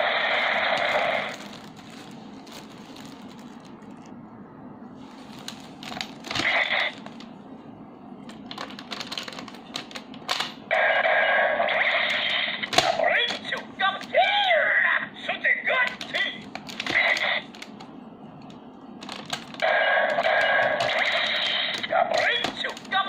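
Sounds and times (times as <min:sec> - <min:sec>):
plastic clicking and handling: 0:05.2 - 0:07.4, 0:08.2 - 0:10.6, 0:12.1 - 0:14.2, 0:15.8 - 0:23.0.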